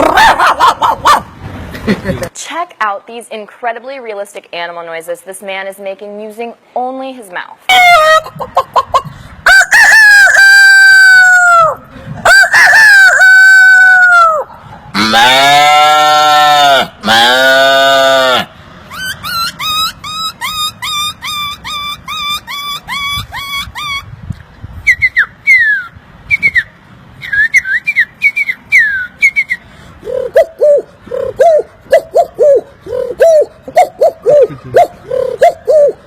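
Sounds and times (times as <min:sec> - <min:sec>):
man imitating a cow moo: 0:15.0 - 0:18.5
whistled bird-like chirps: 0:24.8 - 0:29.6
short cooing calls: 0:28.7 - 0:36.0.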